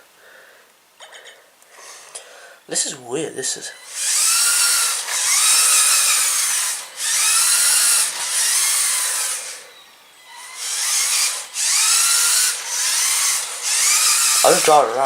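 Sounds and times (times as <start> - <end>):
toy car electric motors whirring: 3.7 - 15.0.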